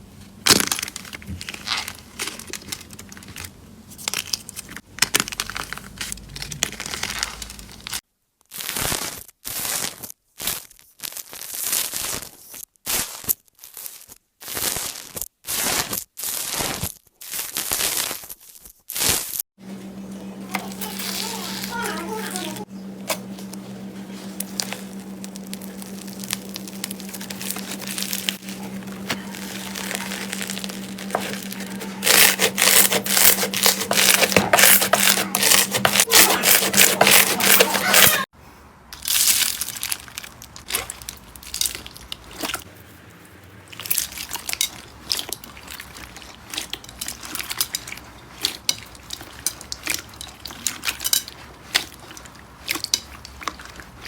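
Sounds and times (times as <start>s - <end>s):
steady low hum: 19.6s - 38.3s.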